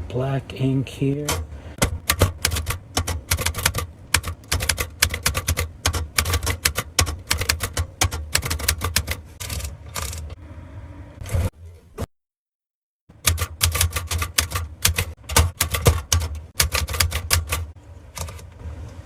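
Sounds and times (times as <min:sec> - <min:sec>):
manual typewriter typing: 0:01.1 - 0:10.4, 0:13.1 - 0:18.5.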